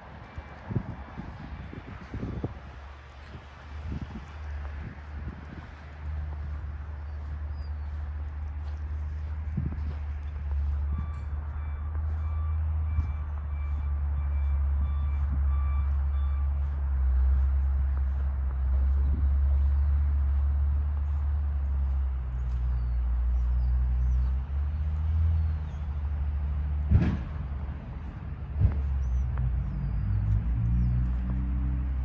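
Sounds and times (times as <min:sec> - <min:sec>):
heavy vehicle engine idling: 0:00.0 - 0:32.0
backup alarm beeping: 0:10.7 - 0:16.7.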